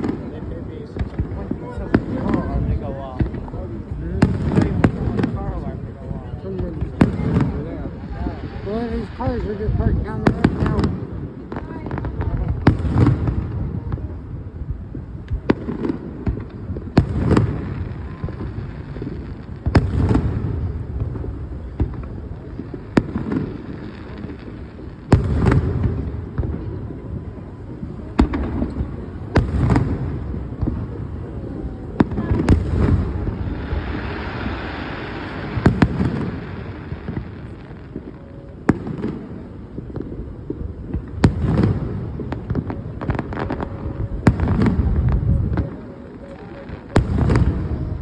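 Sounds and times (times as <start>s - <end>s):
firework bangs: 0.0s - 48.0s
fireworks hissing: 0.0s - 48.0s.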